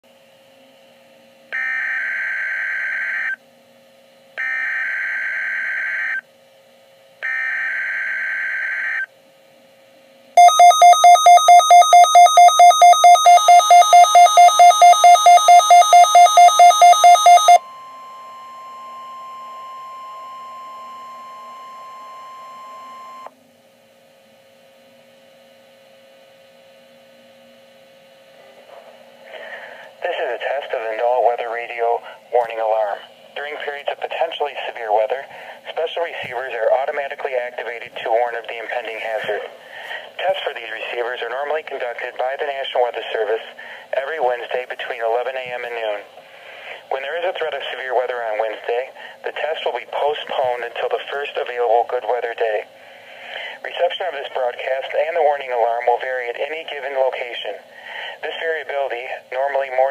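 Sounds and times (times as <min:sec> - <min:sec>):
beeping alarm: 0:04.4 - 0:06.2, 0:10.4 - 0:23.3
steady warning tone: 0:10.4 - 0:23.3.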